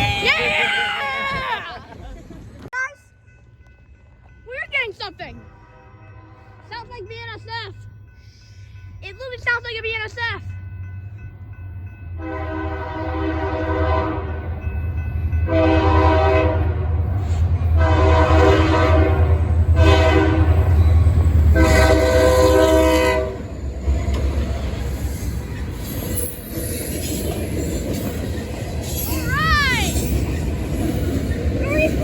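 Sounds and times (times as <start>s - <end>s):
train cars rolling: 0.0s - 5.4s, 9.0s - 32.0s
locomotive air horn blasts: 5.4s - 6.7s, 12.2s - 14.4s, 15.5s - 20.8s, 21.5s - 23.5s.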